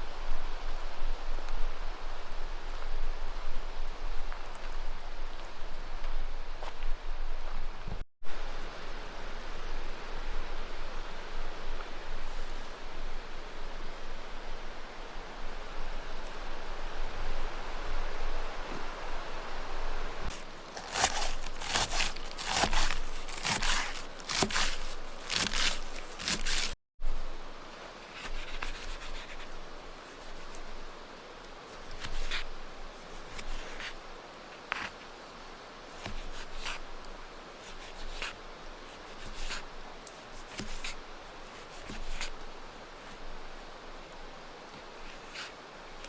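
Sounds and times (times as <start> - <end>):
faint steady hiss: 0.0 - 46.0
rustling and scraping strokes: 11.7 - 14.0, 20.2 - 35.2, 35.8 - 46.0.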